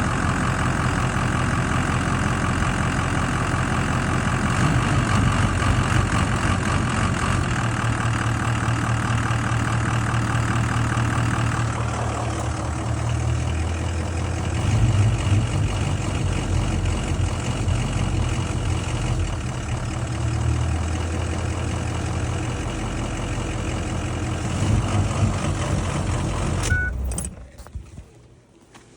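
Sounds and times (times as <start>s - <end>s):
diesel engine idling roughly: 0.0s - 27.6s.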